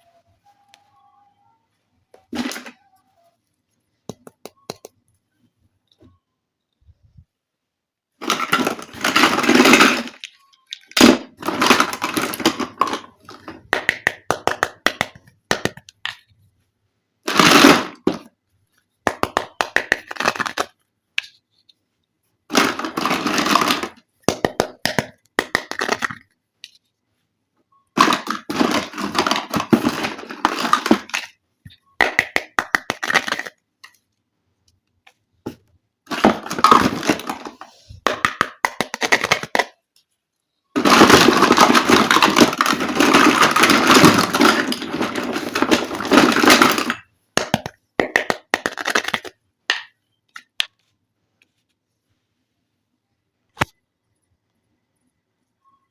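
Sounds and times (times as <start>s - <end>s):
plastic toy pieces clicking: 8.2s - 16.2s, 28.0s - 31.4s, 36.1s - 39.8s, 40.8s - 50.7s
plastic packaging crinkling: 40.8s - 47.0s.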